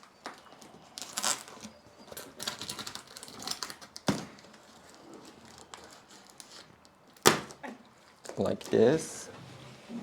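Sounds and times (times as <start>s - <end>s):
cardboard crinkling and crackling: 0.0s - 6.9s.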